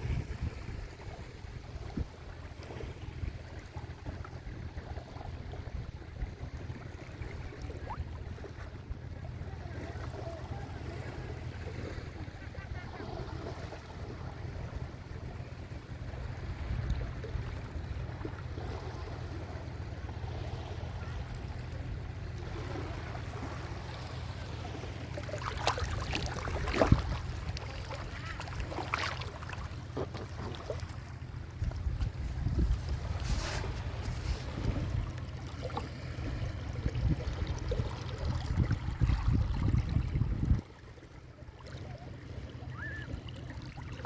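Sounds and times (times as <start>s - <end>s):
sea waves washing on shore: 7.4s - 40.4s
steady low rumble: 8.2s - 42.8s
sharp splashes: 22.5s - 31.2s.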